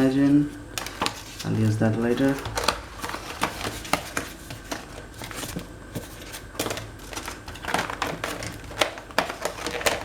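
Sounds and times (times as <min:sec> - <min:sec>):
packaging rustling: 0:00.0 - 0:10.0
packaging clicks and taps: 0:02.2 - 0:10.0.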